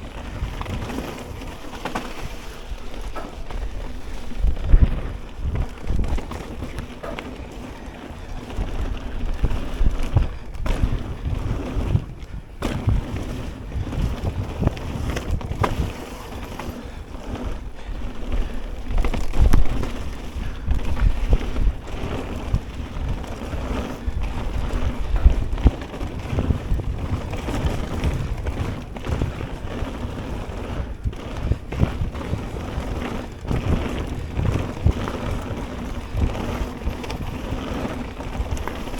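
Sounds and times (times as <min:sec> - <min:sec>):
bike knocks and rattles: 0:00.0 - 0:38.9
bike tyres rumbling on dirt: 0:00.0 - 0:38.9
wind buffeting microphone: 0:00.0 - 0:38.9.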